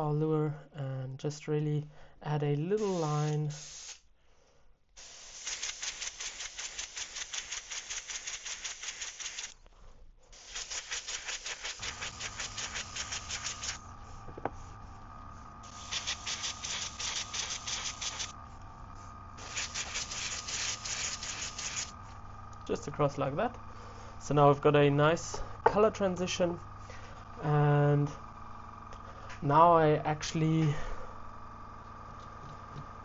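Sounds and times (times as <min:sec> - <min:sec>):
steady hum: 0:02.6 - 0:04.1, 0:08.9 - 0:33.0
airbrush spraying hiss: 0:02.8 - 0:04.1, 0:05.0 - 0:09.6, 0:10.3 - 0:22.0.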